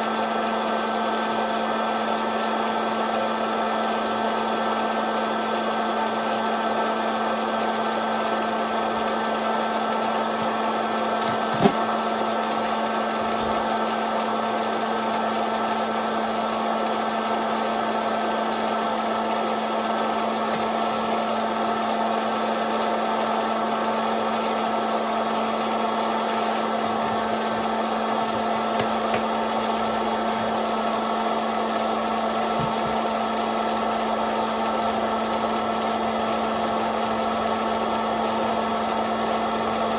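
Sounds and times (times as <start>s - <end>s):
popcorn machine whirring hum: 0.0s - 39.9s
popcorn popping: 10.2s - 13.9s, 19.8s - 21.4s, 24.3s - 33.6s.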